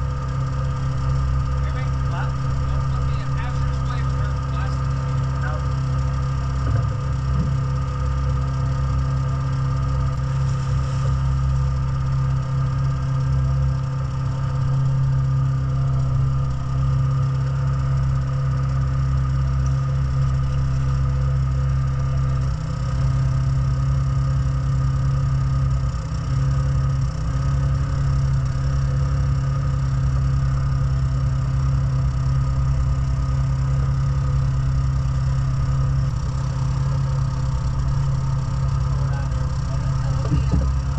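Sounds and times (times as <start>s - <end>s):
engine idling: 0.0s - 40.9s.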